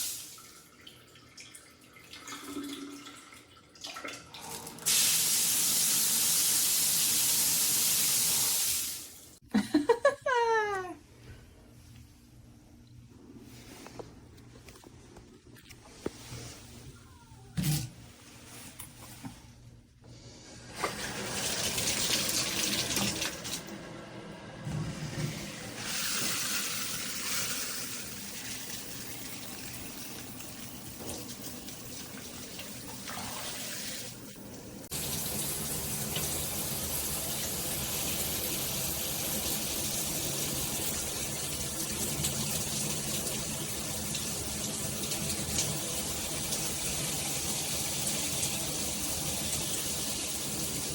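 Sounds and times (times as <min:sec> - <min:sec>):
water spraying from shower head: 0:04.9 - 0:09.3.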